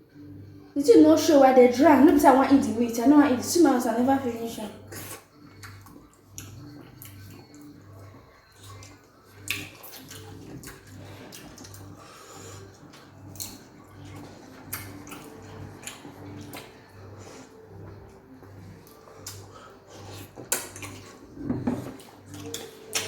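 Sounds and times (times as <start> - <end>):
wet chewing and squishing: 4.9 - 23.0.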